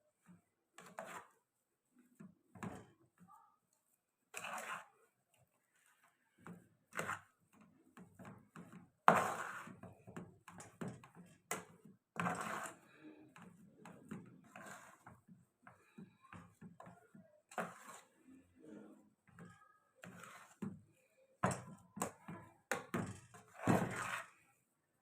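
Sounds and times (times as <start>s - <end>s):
kitchen knocks and clatter: 7.6s - 12.4s, 21.4s - 24.3s.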